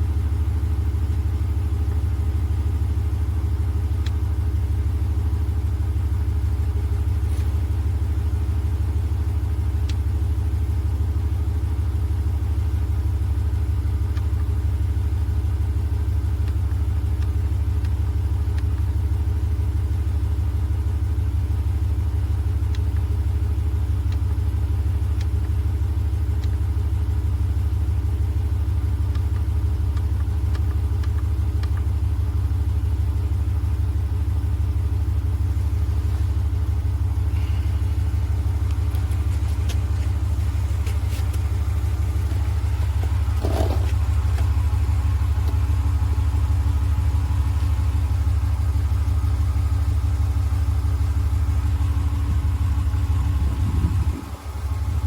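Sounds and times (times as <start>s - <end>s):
air compressor humming: 35.6s - 49.2s.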